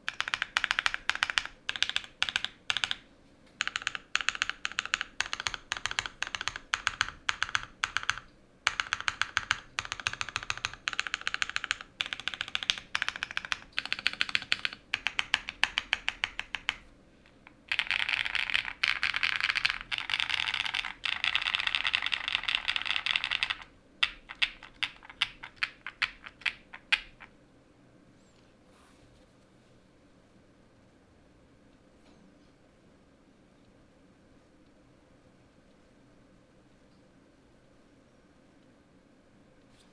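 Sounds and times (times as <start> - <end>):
mechanical keyboard typing: 0.0 - 16.9, 17.5 - 27.3.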